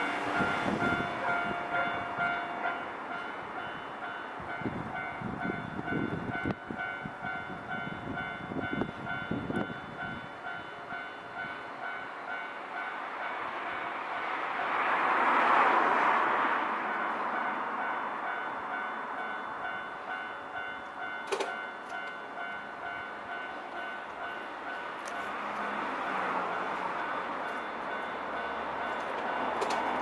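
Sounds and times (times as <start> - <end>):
level-crossing alarm two-tone clang: 0.4 - 4.2
train wheels thumping over rail joints: 28.8 - 30.0.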